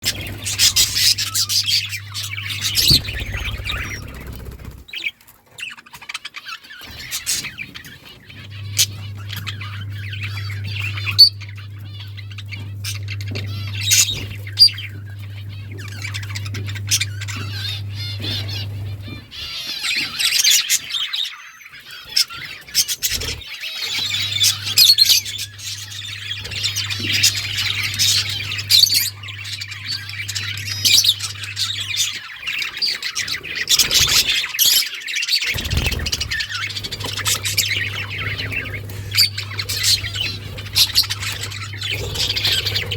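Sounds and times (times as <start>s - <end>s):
low steady hum: 0.0s - 4.9s, 6.9s - 19.8s, 24.0s - 32.6s, 35.5s - 42.9s
budgerigars chattering: 0.0s - 42.9s.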